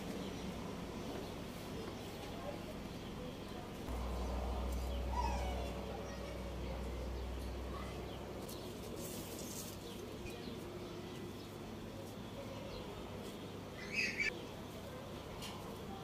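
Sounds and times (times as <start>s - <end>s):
bird chirping: 0.1s - 8.8s, 12.7s - 14.4s.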